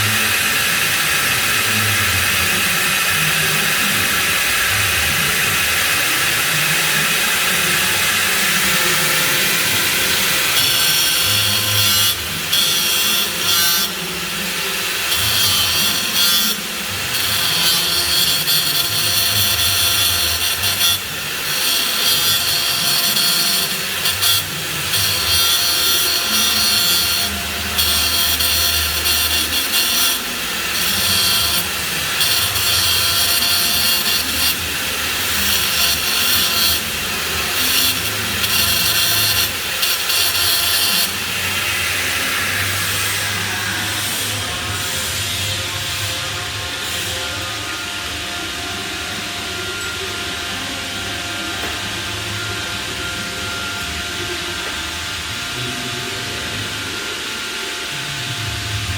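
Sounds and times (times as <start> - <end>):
welding arc crackling: 7.8 - 44.1.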